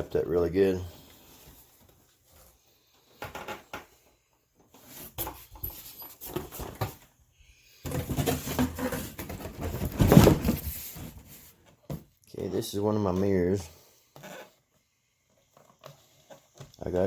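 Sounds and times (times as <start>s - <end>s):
packaging rustling and bumping: 7.9s - 12.1s.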